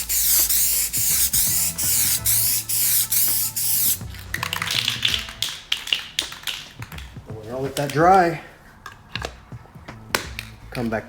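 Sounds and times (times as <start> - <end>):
spray paint can hissing: 0.0 - 6.8
background music: 0.0 - 11.0.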